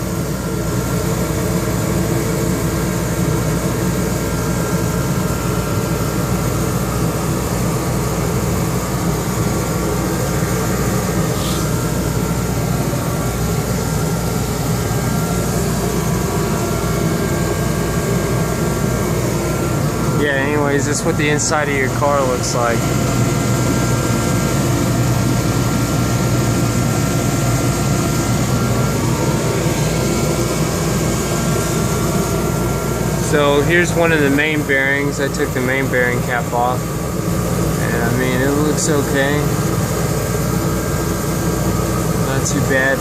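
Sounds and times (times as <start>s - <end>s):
ventilation fan hum: 0.0s - 43.0s.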